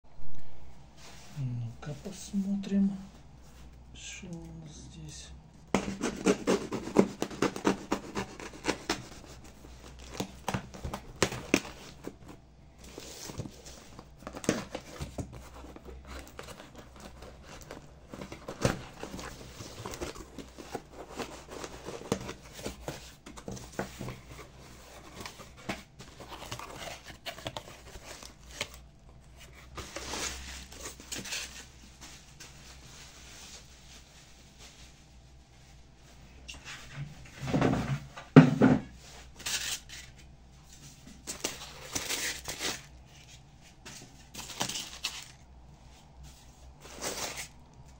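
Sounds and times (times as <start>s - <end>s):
packaging rustling and crinkling: 5.7s - 35.2s, 39.2s - 47.9s.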